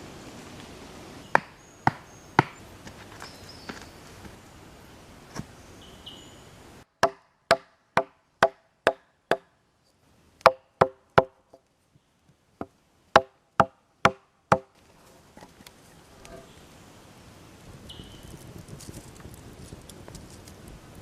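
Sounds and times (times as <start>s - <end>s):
tool striking wood: 1.3s - 2.6s, 7.0s - 9.5s, 10.4s - 11.4s, 12.6s - 14.7s.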